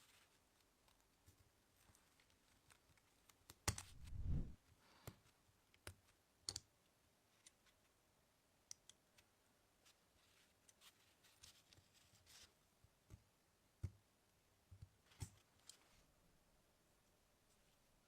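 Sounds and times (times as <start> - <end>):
short low rumble: 4.0 - 4.6.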